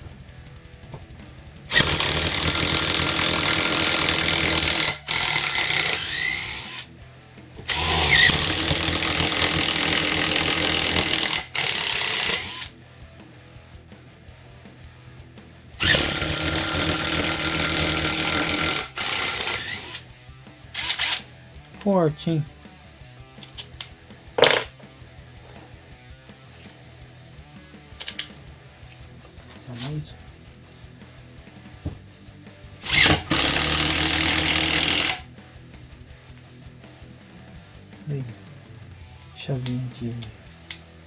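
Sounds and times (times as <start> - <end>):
impact driver drilling into wood: 1.7 - 6.9, 7.7 - 12.7, 15.8 - 20.0, 20.8 - 21.3, 32.8 - 35.3.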